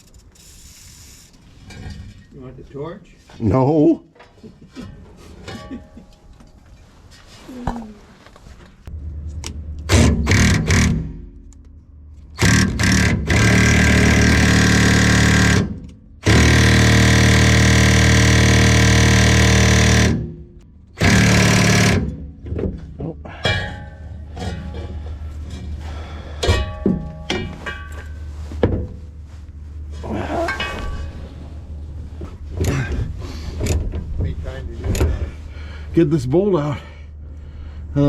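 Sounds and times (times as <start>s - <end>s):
steady low hum: 5.7s - 38.0s
power tool bursts: 12.4s - 20.3s, 21.0s - 22.1s.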